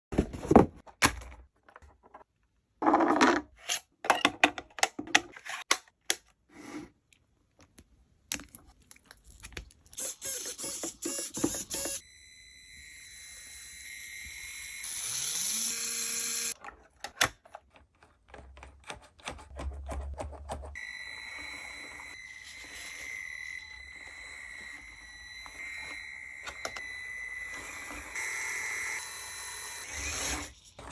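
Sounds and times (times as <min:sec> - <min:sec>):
small electric motor whining: 0:10.0 - 0:16.6, 0:20.8 - 0:30.9.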